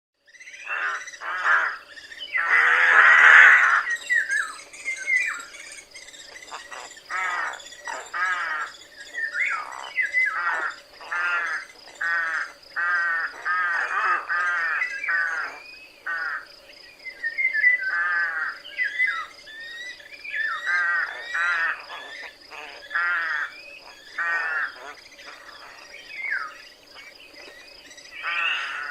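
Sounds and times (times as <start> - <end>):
rooks cawing: 0.6 - 4.5, 6.4 - 8.9, 9.6 - 16.6, 17.8 - 19.3, 20.5 - 26.6, 28.2 - 28.9.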